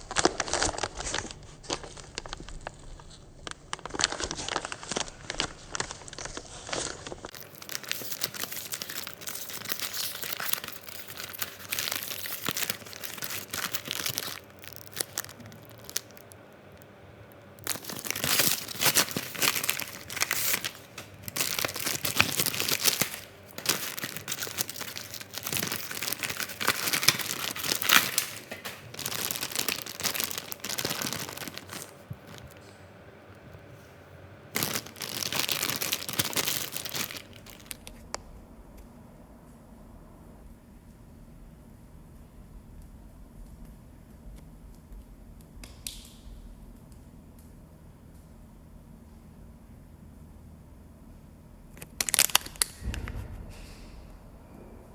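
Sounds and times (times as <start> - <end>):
crinkling and rustling: 0.0 - 38.1.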